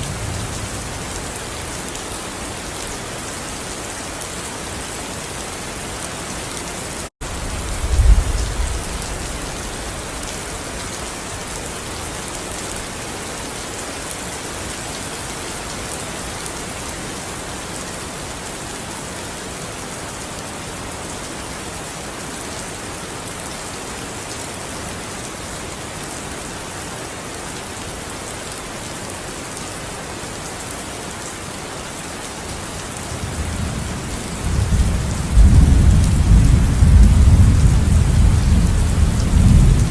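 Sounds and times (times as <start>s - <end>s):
heavy rain: 0.0s - 39.9s
thunder rumbling: 7.3s - 10.2s, 33.2s - 39.9s.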